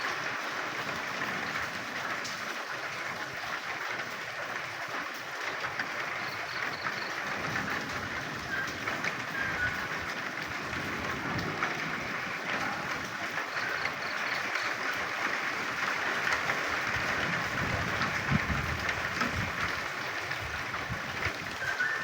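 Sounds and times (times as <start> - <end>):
steady rain falling: 0.0 - 22.0
frogs croaking: 5.9 - 10.0, 11.6 - 15.0.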